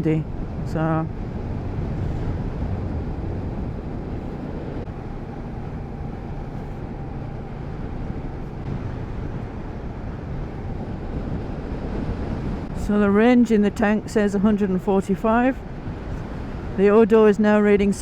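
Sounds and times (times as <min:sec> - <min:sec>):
wind rushing: 0:00.0 - 0:14.6.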